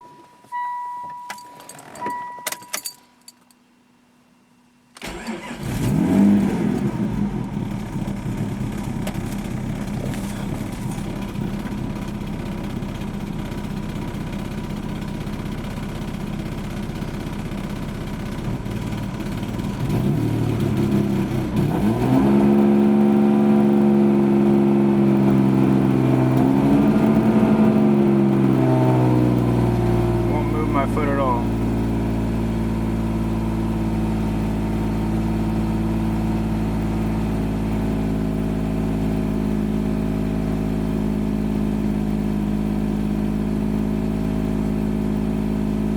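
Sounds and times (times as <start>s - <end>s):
chime beeps: 0.0s - 2.8s
car engine cranking and idling: 4.9s - 45.9s.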